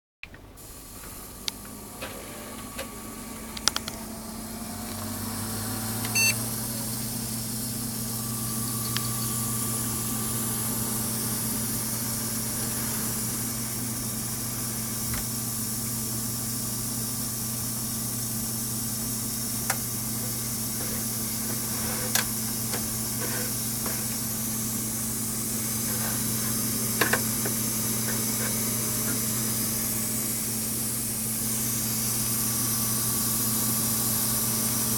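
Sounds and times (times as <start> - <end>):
computer fans humming: 0.4 - 34.9
computer high hiss: 0.6 - 16.1, 19.6 - 34.8
short beep: 6.1 - 6.4.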